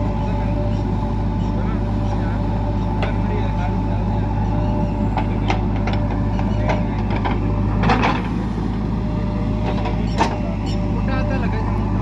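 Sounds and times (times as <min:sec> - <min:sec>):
heavy diesel engine running: 0:00.0 - 0:12.0
clanks and knocks: 0:05.1 - 0:08.4, 0:09.6 - 0:10.4.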